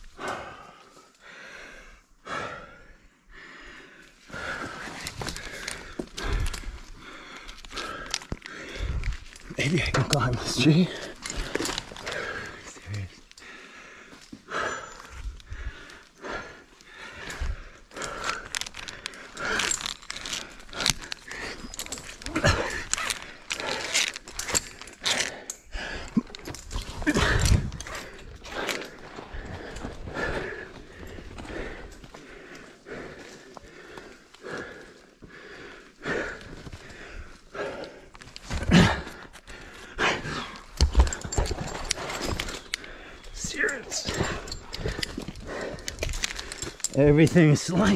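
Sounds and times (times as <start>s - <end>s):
person breathing hard: 0.0s - 9.6s, 10.8s - 47.0s
rope and gear scuffing: 40.1s - 47.9s.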